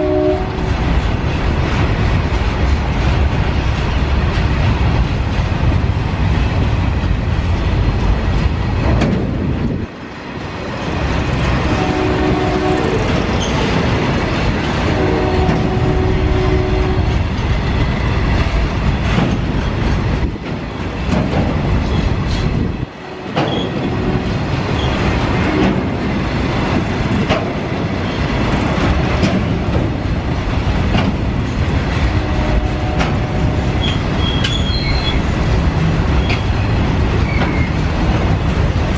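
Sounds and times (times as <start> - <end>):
freight train wheels clattering: 0.0 - 38.9.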